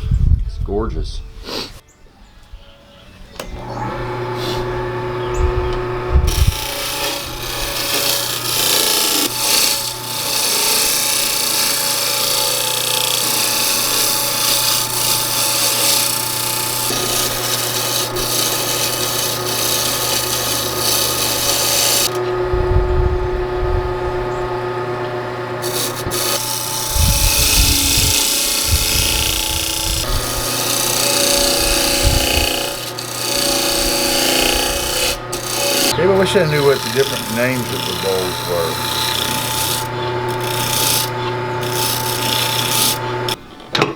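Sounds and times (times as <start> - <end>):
lathe motor hum: 3.4 - 43.4
turning tool scraping wood: 3.7 - 22.4, 25.6 - 43.4.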